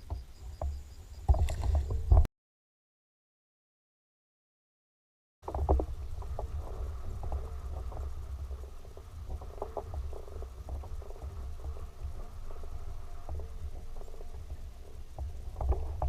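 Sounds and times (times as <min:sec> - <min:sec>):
steady low rumble: 0:05.4 - 0:16.0.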